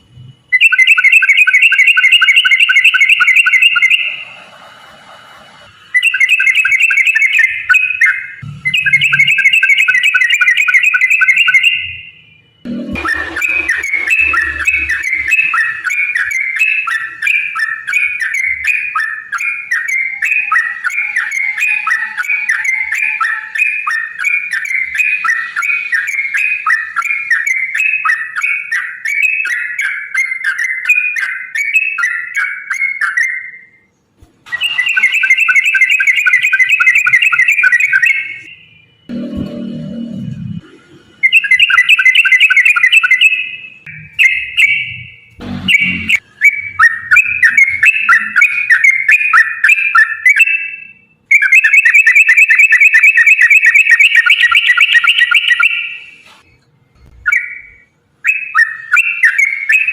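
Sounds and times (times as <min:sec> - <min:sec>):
bird singing chattering whistles: 0:00.6 - 0:04.2, 0:05.9 - 0:12.0, 0:13.0 - 0:33.8, 0:34.5 - 0:38.8, 0:41.2 - 0:56.2, 0:57.2 - 0:59.9.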